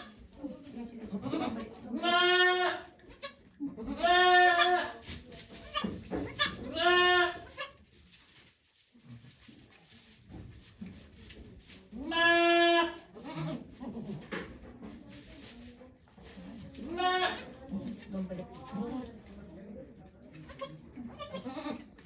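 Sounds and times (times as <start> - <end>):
goat bleating: 1.2 - 5.0, 5.6 - 7.8, 12.0 - 14.2, 16.8 - 17.5, 20.5 - 22.0.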